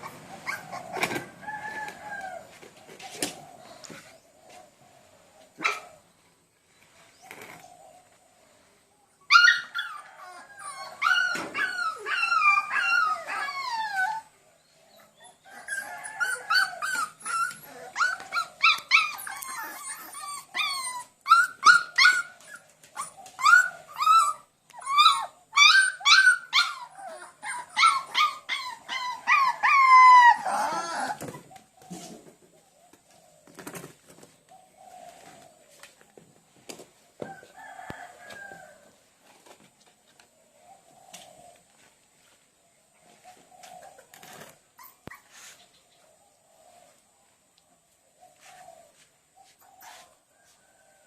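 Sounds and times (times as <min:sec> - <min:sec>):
dog howling and whining: 0:09.3 - 0:14.4, 0:15.2 - 0:31.5.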